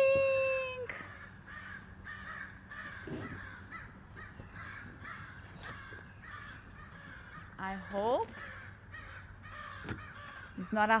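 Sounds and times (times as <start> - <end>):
crows cawing: 1.0 - 11.0.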